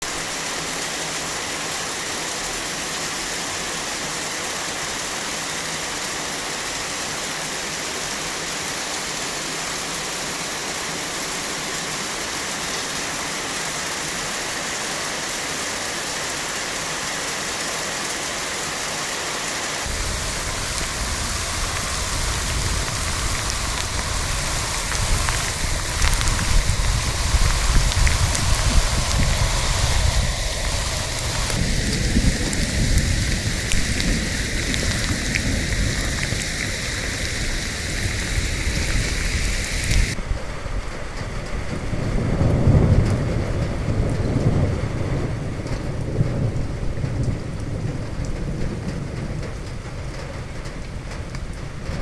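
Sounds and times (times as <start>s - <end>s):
rain falling steadily: 0.0s - 52.0s
low rumble: 19.9s - 40.8s.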